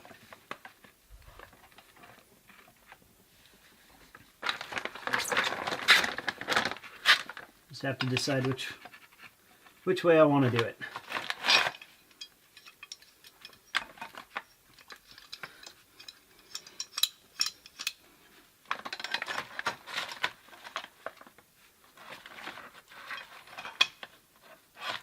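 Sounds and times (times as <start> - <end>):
metal tools clinking: 11.4 - 18.1.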